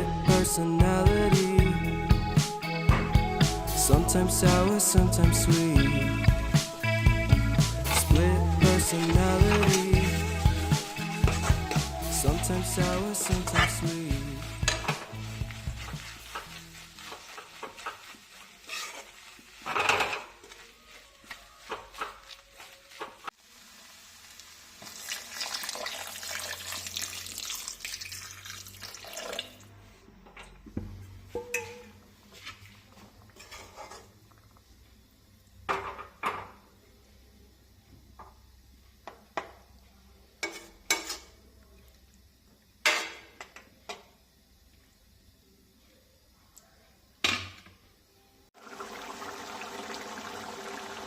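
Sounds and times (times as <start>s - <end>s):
steady hiss: 3.4s - 27.3s
utensils clinking against pots: 14.6s - 15.2s, 31.4s - 32.0s.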